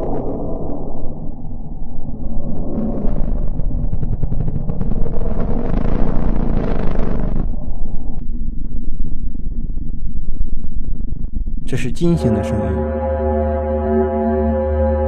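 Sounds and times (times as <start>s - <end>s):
deep crackling rumble: 0.0s - 11.6s.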